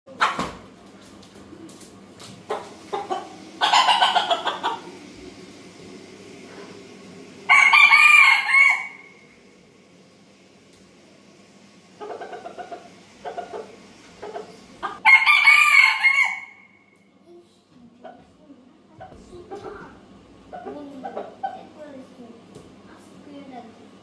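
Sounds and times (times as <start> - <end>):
rooster clucking: 2.4 - 5.1, 7.5 - 9.2, 12.0 - 16.7
rooster crowing: 3.0 - 4.9, 7.4 - 9.4, 15.0 - 16.8.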